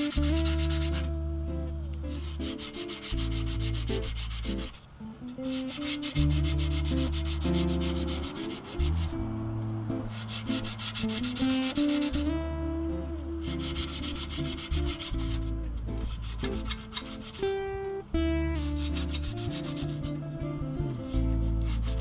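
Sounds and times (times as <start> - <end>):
sandpaper rubbing on steel: 0.0 - 1.2, 2.1 - 9.2, 10.0 - 12.4, 13.2 - 17.6, 18.6 - 20.2, 21.2 - 22.0.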